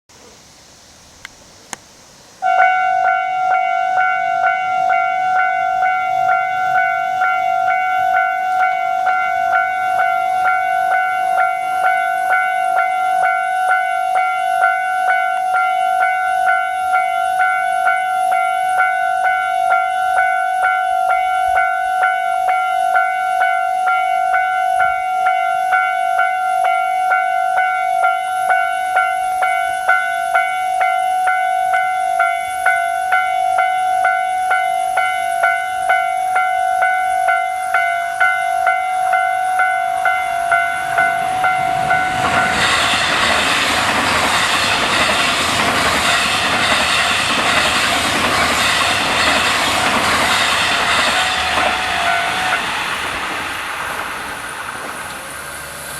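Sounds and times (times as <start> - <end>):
level-crossing warning bell ringing: 2.4 - 55.9.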